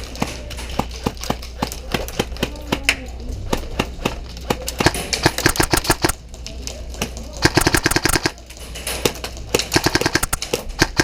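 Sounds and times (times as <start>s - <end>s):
airsoft gun shots: 4.9s - 6.2s, 7.4s - 8.4s, 9.8s - 11.0s.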